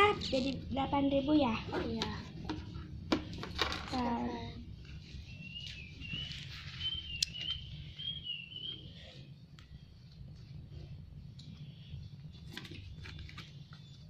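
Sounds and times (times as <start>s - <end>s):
low steady background rumble: 0.0s - 14.0s
bird chirping: 5.2s - 9.8s.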